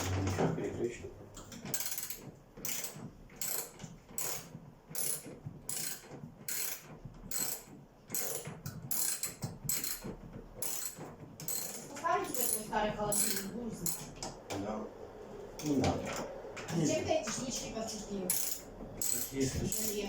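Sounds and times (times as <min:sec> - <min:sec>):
ratchet tool clicking: 0:01.7 - 0:14.1, 0:18.3 - 0:20.0.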